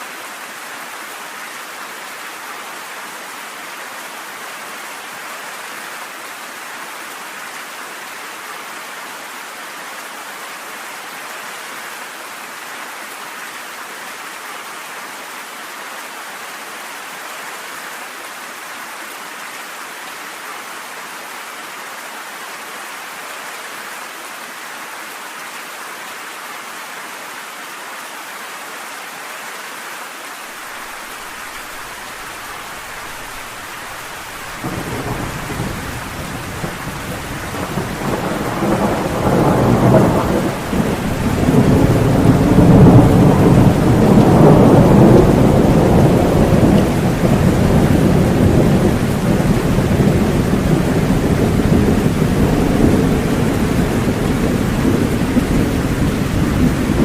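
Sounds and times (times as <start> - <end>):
steady rain: 0.0 - 57.0
thunder rumbling: 32.8 - 57.0.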